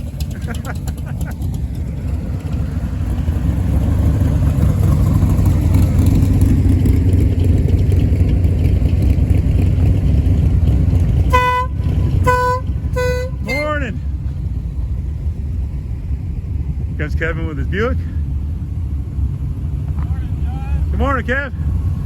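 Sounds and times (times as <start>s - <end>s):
car engine rumbling: 0.0s - 22.0s
car horn honks: 11.2s - 13.9s.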